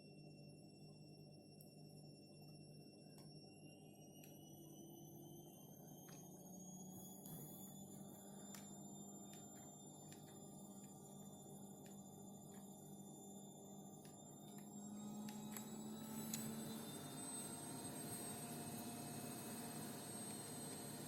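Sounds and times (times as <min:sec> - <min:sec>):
electrical hum: 0:00.2 - 0:21.0.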